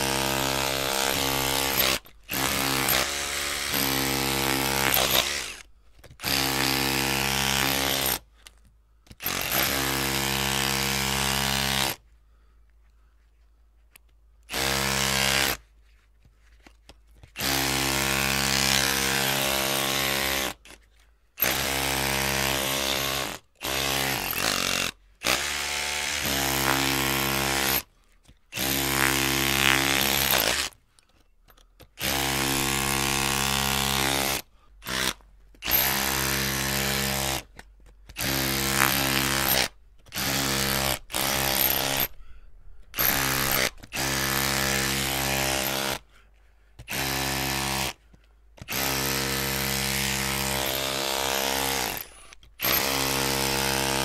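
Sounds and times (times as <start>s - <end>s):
electric drill motor whining: 0.0s - 8.2s, 32.0s - 37.4s, 38.2s - 42.2s, 43.0s - 46.0s, 48.7s - 54.0s.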